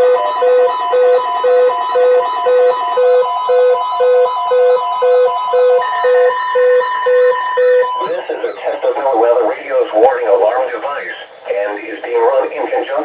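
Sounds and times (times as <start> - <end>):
repeating warble: 0.0 - 9.3.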